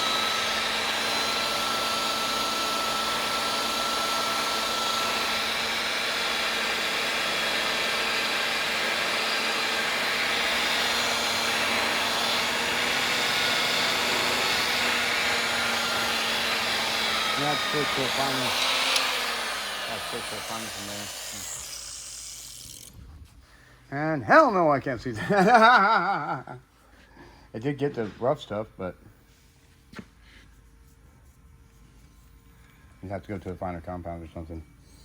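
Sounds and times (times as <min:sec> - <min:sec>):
electric buffer humming and whining: 0:00.0 - 0:23.0.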